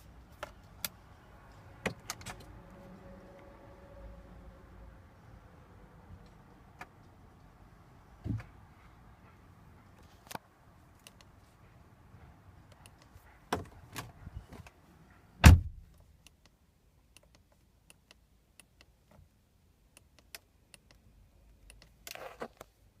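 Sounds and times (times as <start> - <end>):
car door shutting: 15.4 - 15.8.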